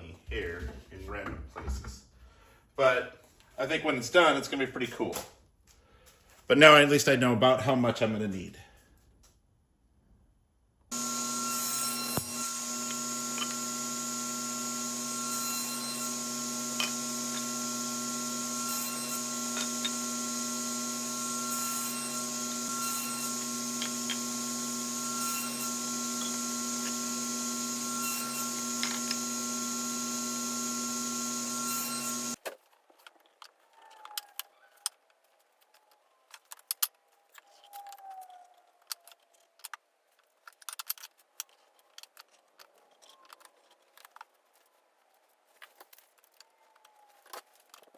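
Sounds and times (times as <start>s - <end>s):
electric machine motor humming: 10.9s - 32.4s.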